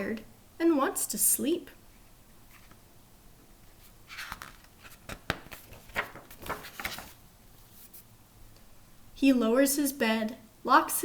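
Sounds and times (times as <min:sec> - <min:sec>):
book pages rustling: 0:02.5 - 0:02.8, 0:03.7 - 0:08.1
sharp page clicks: 0:04.2 - 0:07.2.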